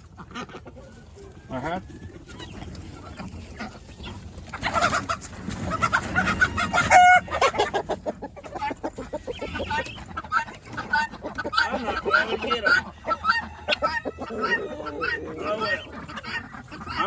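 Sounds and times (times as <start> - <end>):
chickens clucking: 0.0 - 17.0.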